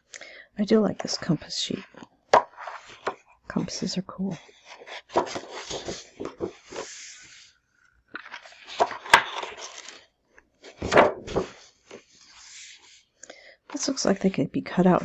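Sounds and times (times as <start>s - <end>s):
paper rustling and crinkling: 1.0s - 3.4s, 4.4s - 13.1s.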